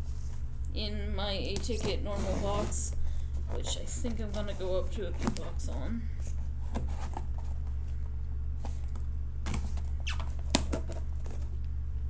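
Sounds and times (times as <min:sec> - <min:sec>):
steady low hum: 0:00.0 - 0:12.0
cardboard and tape scratching: 0:01.6 - 0:02.9, 0:03.6 - 0:07.8.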